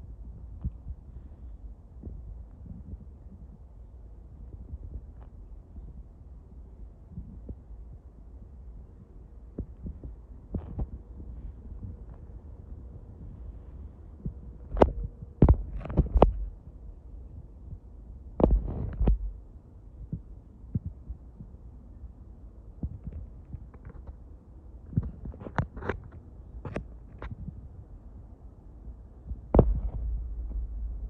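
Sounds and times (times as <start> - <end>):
faint low rumble: 0.0 - 31.0
low thumps and sharp knocks: 14.7 - 16.5, 18.4 - 19.4, 29.5 - 31.0.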